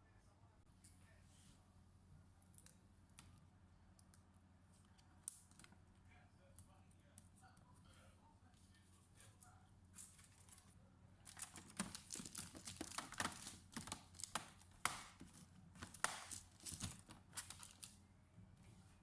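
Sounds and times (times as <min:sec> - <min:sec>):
faint steady hum: 0:00.0 - 0:19.0
small clicks taps and rustles: 0:11.3 - 0:18.0.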